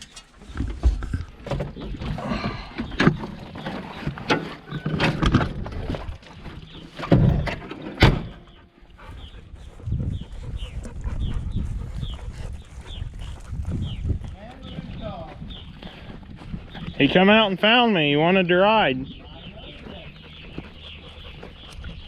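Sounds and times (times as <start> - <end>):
dog panting: 8.5 - 14.0, 19.0 - 22.0.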